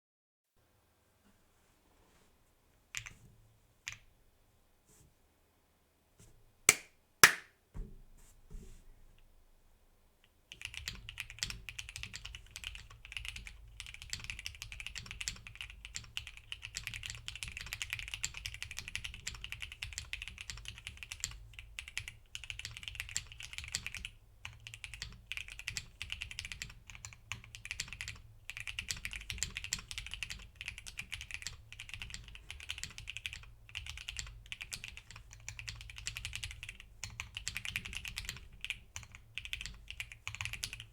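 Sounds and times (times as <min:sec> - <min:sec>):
mechanical keyboard typing: 0:10.5 - 0:40.9.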